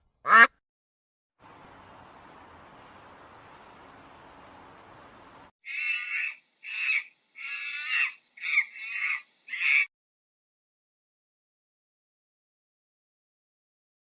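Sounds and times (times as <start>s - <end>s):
faint steady hiss: 1.4s - 5.5s
bird calling: 5.7s - 9.9s.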